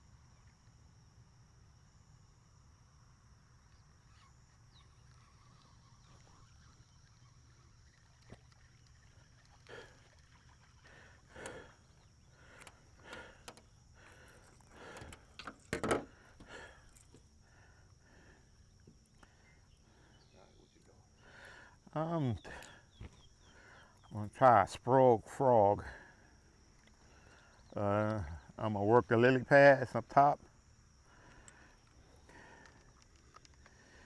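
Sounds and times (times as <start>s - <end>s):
crickets chirping: 0.0s - 34.0s
irregular knocks and rustles: 12.6s - 17.3s.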